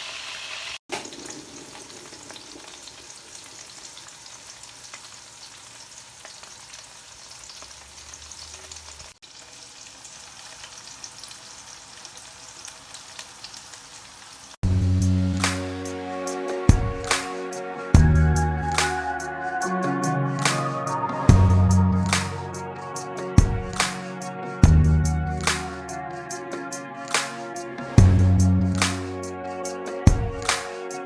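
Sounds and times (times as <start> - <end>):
food sizzling in oil: 0.0 - 14.6
loud music: 14.6 - 31.0.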